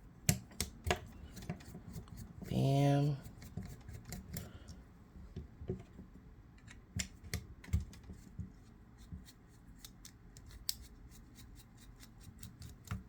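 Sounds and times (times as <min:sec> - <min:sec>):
small clicks and taps: 0:00.2 - 0:01.7.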